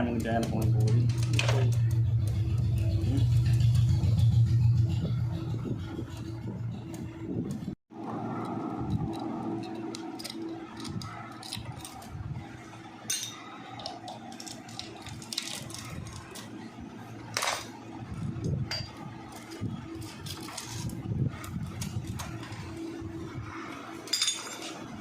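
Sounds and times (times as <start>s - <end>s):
metal tools clinking and rattling: 0.4s - 1.9s, 9.0s - 12.2s, 13.0s - 16.5s, 17.4s - 17.8s, 18.7s - 21.0s, 24.0s - 25.0s.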